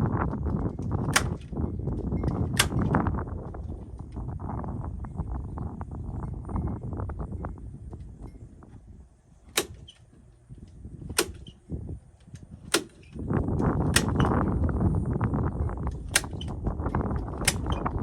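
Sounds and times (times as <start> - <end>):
low rumble: 0.0 - 18.0
nail gun firing: 1.1 - 1.6, 2.5 - 3.0, 9.5 - 10.2, 11.1 - 11.6, 12.2 - 13.2, 13.9 - 14.4, 16.0 - 16.5, 17.4 - 17.9.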